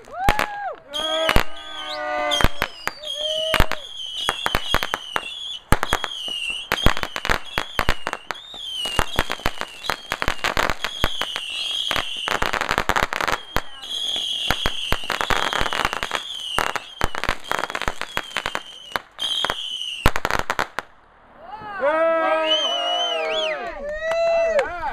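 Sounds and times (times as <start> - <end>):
fireworks bangs and crackles: 0.0 - 21.8
firework whistles: 0.9 - 20.2.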